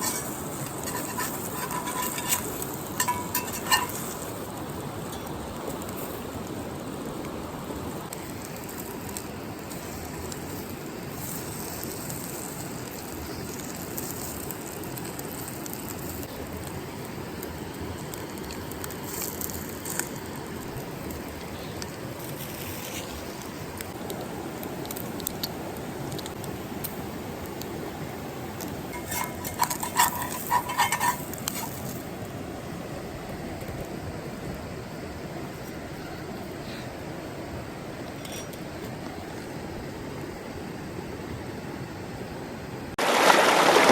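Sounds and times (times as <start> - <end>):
river flowing: 42.2 - 43.9.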